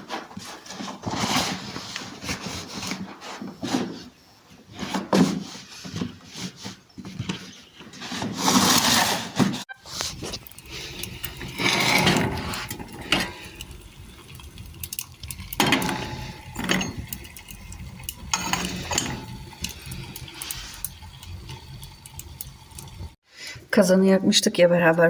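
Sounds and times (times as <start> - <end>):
dishes clinking and clattering: 10.4 - 23.0.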